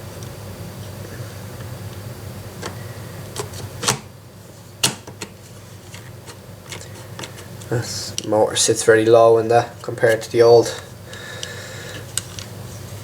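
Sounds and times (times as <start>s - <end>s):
sharp clicks and knocks of handling: 4.8s - 8.3s.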